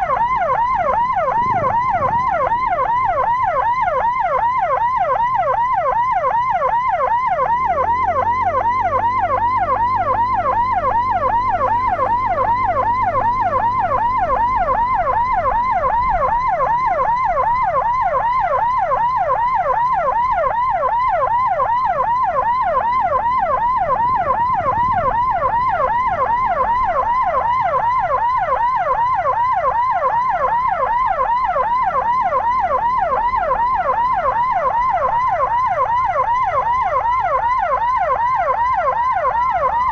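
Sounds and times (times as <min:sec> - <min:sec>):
vehicle engine humming: 0:00.0 - 0:39.7
electronic siren yelping: 0:00.0 - 0:39.9.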